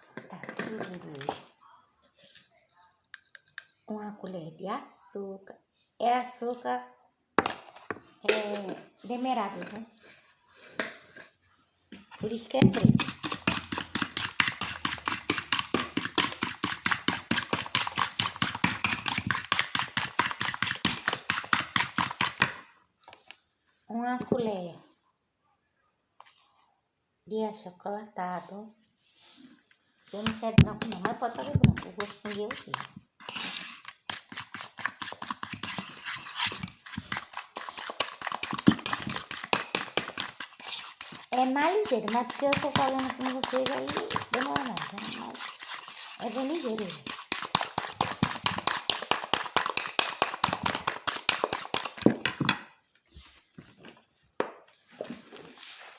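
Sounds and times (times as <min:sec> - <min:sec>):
spoon scraping inside a mug: 0:12.8 - 0:22.4, 0:31.8 - 0:52.0.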